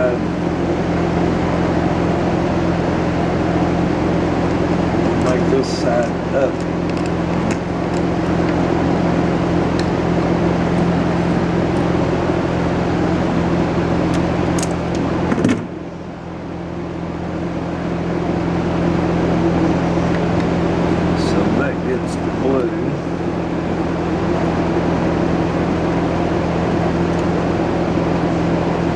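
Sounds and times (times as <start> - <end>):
machine hum: 0.0 - 28.9.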